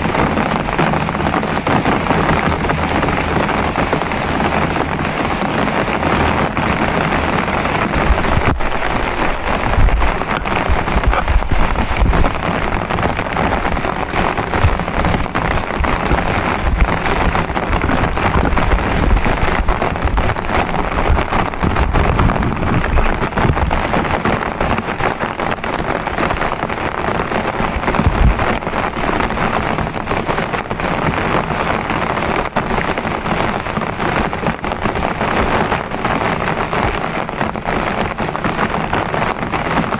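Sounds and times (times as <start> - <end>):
heavy rain: 0.0 - 39.9
raindrops ticking close by: 0.0 - 39.9
low rumble: 6.0 - 23.6.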